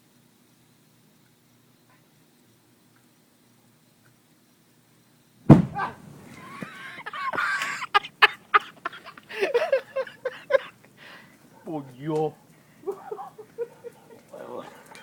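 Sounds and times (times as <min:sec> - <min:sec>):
bonfire igniting burst: 0:05.5 - 0:06.8
fire crackling and popping: 0:05.5 - 0:06.8, 0:10.8 - 0:15.0.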